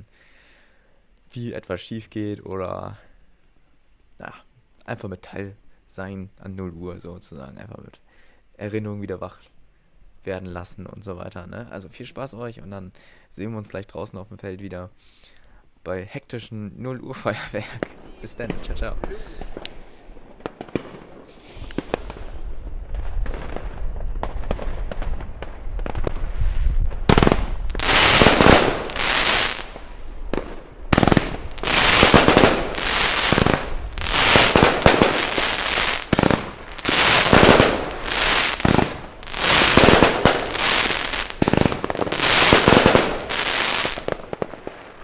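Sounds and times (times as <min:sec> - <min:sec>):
fireworks bangs and crackling: 0:17.7 - 0:45.0.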